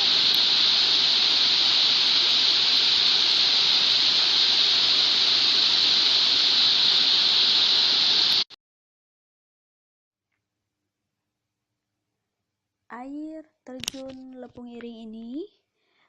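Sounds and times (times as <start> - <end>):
waterfall rushing: 0.0 - 8.4.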